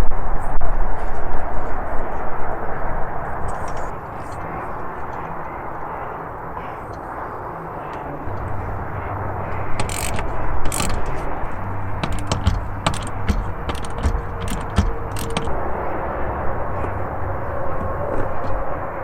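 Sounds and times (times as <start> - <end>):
low background rumble: 1.5 - 19.0
mechanical clicks and scrapes: 8.4 - 15.8.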